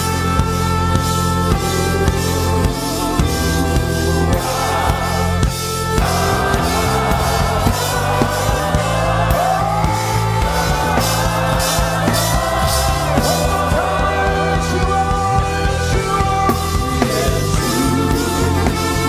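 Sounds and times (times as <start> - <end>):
band with drums and bass: 0.0 - 19.0.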